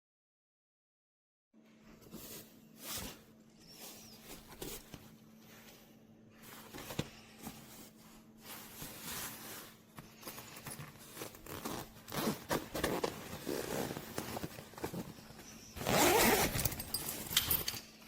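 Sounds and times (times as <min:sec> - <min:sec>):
backpack fabric rustling: 0:06.3 - 0:17.3
zipper running: 0:11.1 - 0:15.2, 0:15.8 - 0:16.9.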